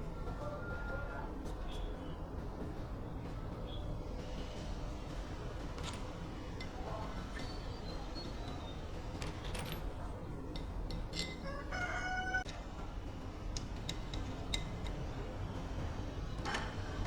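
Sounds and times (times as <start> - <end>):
rooster crowing: 11.4 - 12.5.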